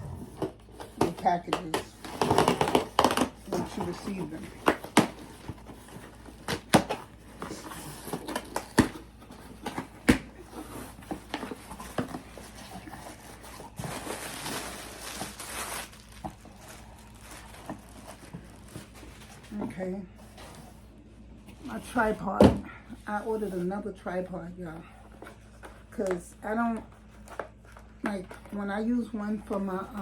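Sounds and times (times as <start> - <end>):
packaging tearing and crinkling: 10.7 - 19.0.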